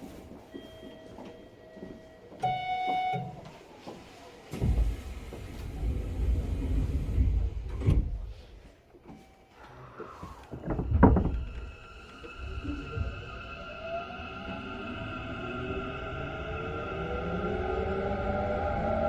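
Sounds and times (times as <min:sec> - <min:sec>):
train doors sliding shut: 0:04.4 - 0:08.6, 0:10.0 - 0:13.8
low train rumble: 0:04.5 - 0:08.6, 0:10.2 - 0:19.0.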